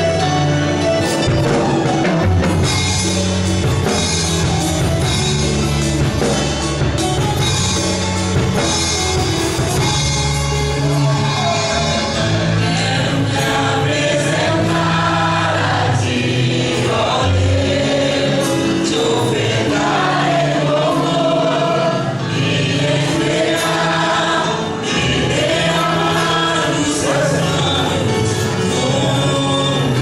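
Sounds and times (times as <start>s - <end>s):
bass line: 0.0s - 22.0s
band playing: 0.0s - 30.0s
choir singing: 10.7s - 30.0s.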